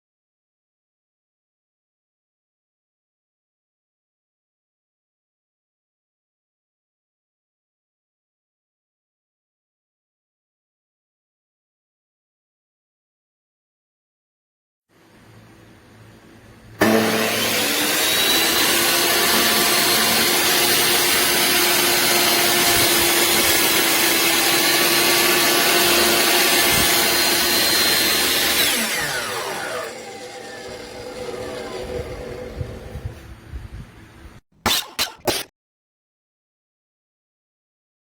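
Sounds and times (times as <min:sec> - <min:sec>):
miter saw motor whining: 0:16.8 - 0:33.2.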